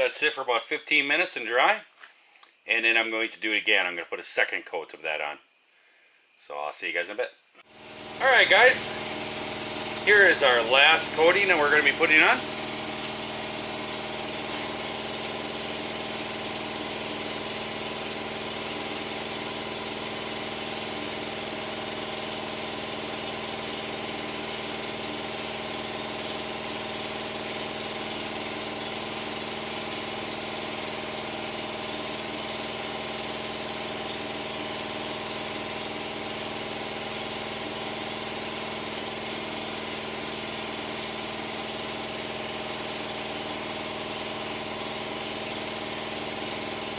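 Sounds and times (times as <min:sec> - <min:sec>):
engine idling: 0:07.7 - 0:46.9.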